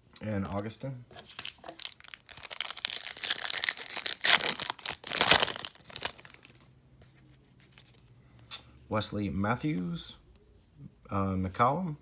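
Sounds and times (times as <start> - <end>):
wrapper crinkling and tearing: 1.3 - 6.6.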